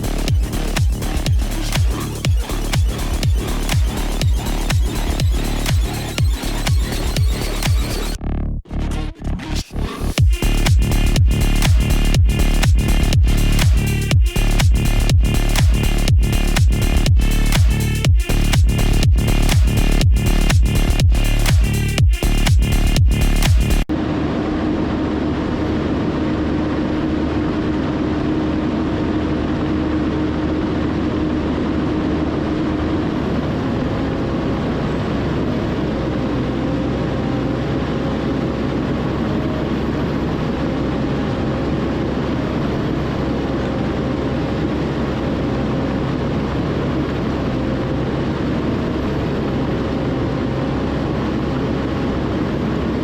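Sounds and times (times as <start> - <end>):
high whines: 0.0 - 34.6
bulldozer running: 0.0 - 53.0.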